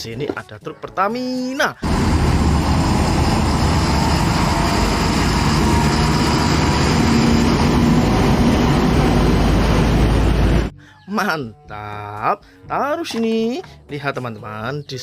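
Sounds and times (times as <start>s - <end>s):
truck engine running: 1.8s - 10.7s.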